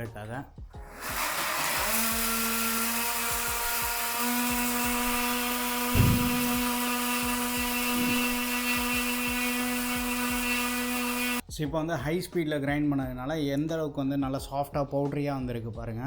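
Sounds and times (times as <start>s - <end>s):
mixer grinder motor whine: 0.8s - 11.4s
loud knock: 4.3s - 9.2s.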